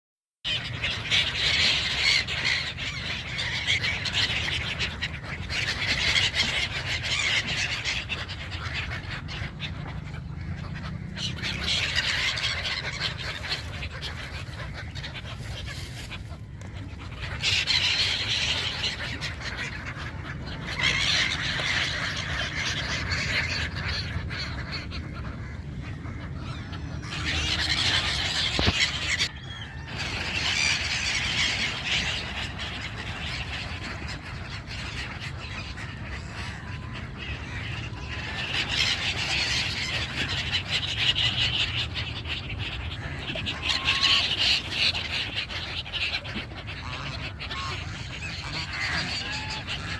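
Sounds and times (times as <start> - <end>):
flock of birds squealing: 0.5 - 49.9
low steady rumble: 3.0 - 43.6.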